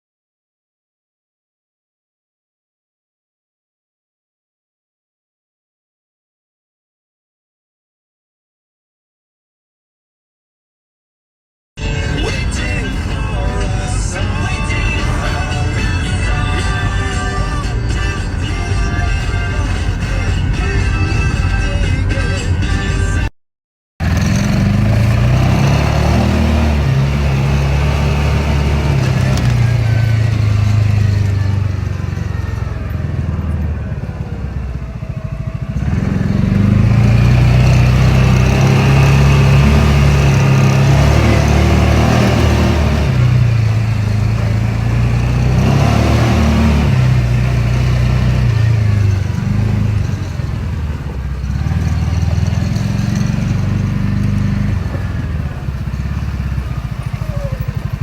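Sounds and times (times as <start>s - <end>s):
farm vehicle engine running: 11.8s - 23.3s, 24.0s - 58.0s.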